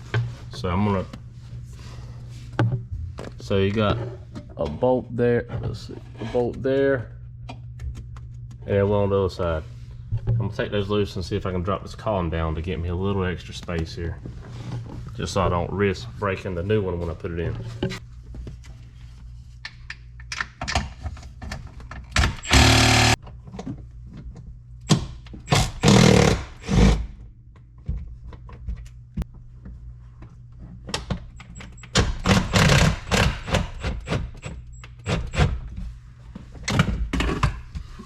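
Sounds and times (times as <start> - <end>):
power tool bursts: 22.2 - 23.2, 25.5 - 27.0, 32.2 - 33.8.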